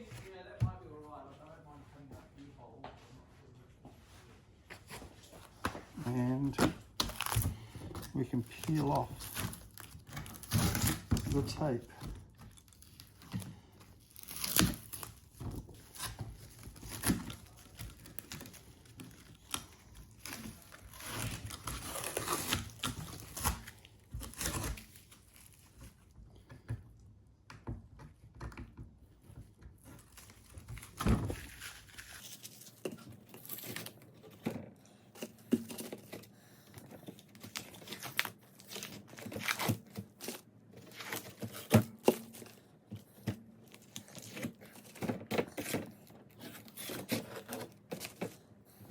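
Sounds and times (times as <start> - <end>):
tape crinkling: 5.2 - 26.1, 29.8 - 48.5
masking tape ripping: 6.0 - 11.8, 14.0 - 25.6, 30.0 - 34.0, 37.3 - 42.4.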